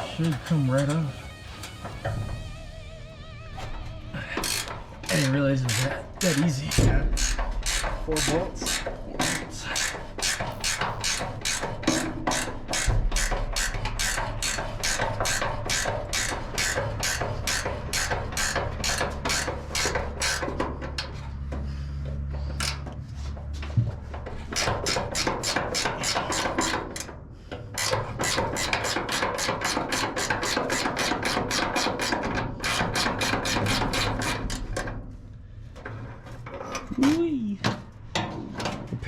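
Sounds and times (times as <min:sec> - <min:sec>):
deep bass line: 0:00.0 - 0:09.2, 0:10.4 - 0:11.4.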